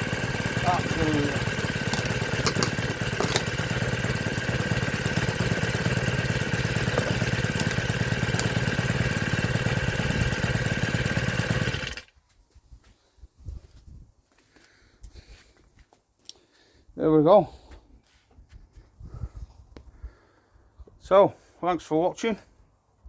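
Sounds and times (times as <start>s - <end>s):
strimmer engine running: 0.0s - 12.1s.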